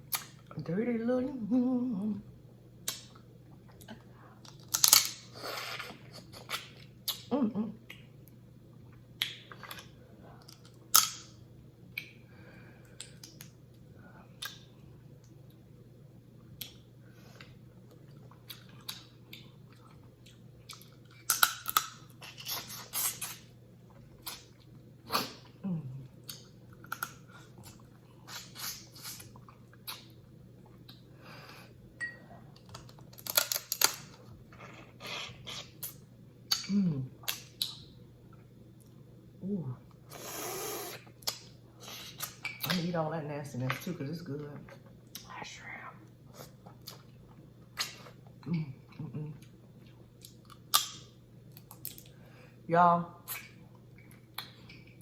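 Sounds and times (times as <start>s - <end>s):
wet eating noises: 4.8s - 11.0s, 16.5s - 31.1s.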